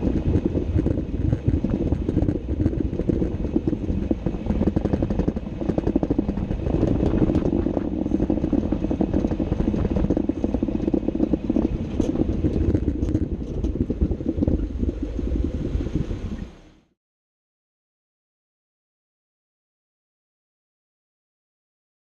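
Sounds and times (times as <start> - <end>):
rapid chattering grind: 0.0 - 14.9
drivetrain and road rumble: 0.0 - 16.8.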